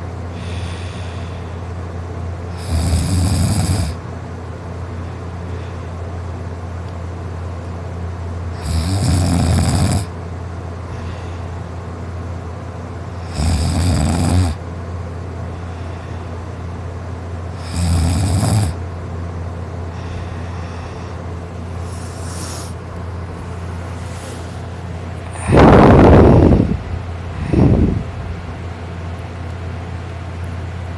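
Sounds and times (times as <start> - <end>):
steady low hum: 0.0 - 30.9
person snoring loudly: 2.5 - 4.0, 8.5 - 10.1, 13.2 - 14.6, 17.6 - 18.8, 21.8 - 22.8, 25.3 - 28.0.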